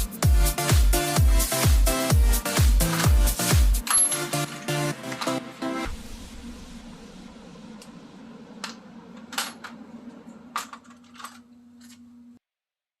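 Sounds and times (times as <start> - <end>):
steady low hum: 5.8 - 12.4.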